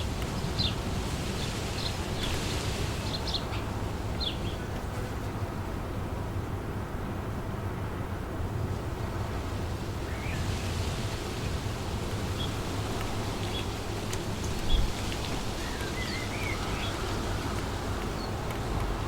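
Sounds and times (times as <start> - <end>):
birds chirping: 0.0 - 4.8, 12.1 - 19.0
wind blowing through trees: 0.0 - 19.0
wind rumble on microphone: 0.0 - 19.0.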